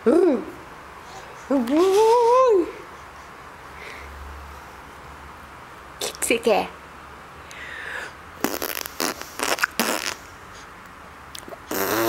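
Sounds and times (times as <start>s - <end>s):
baby sputtering mouth noises: 8.4s - 10.2s, 11.4s - 12.0s.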